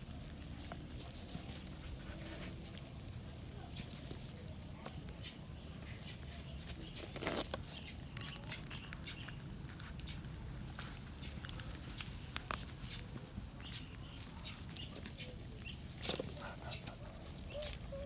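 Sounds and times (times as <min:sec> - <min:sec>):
rustling scuffle: 0:00.0 - 0:08.4
puppies eating with clicks and taps: 0:00.0 - 0:17.9.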